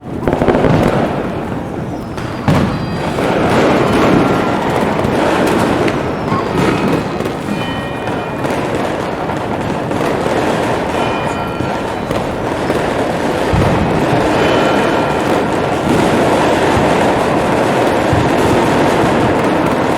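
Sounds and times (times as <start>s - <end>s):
fireworks exploding and crackling: 0.0s - 19.9s
heavy firework thumps: 0.1s - 19.9s
bell-like ringing tones: 2.6s - 17.8s.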